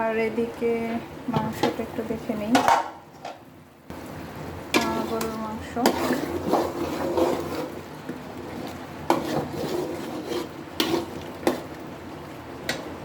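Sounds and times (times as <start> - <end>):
spoon stirring in a pot: 4.7 - 12.0.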